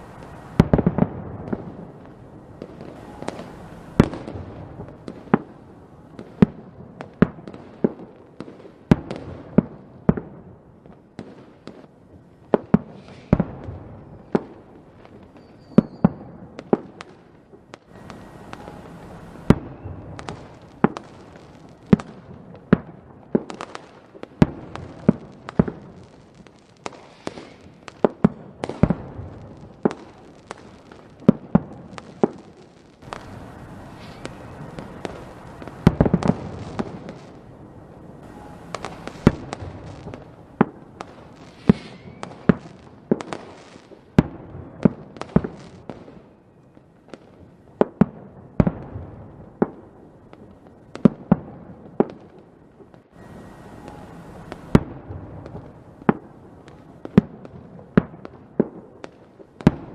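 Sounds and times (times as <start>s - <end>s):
fireworks bangs and cracks: 0.0s - 59.9s
low rumble of bursts: 33.0s - 41.0s.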